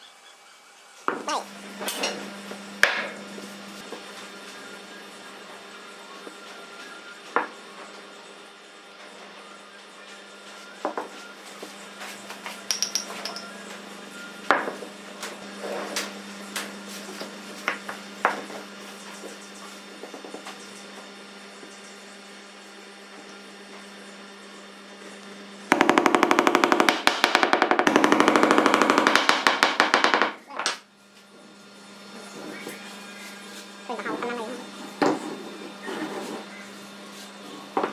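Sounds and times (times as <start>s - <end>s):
power tool running: 25.7s - 30.4s.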